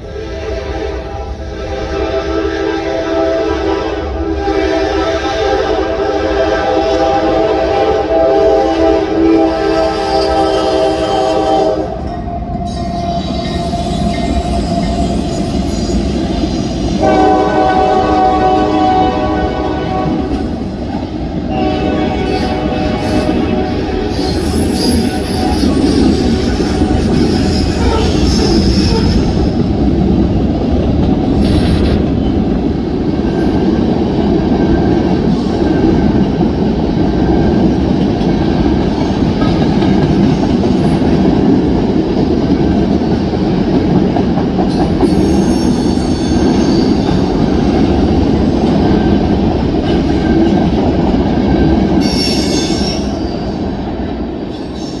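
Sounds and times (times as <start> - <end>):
train wheels rumbling on rail: 0.0 - 55.0.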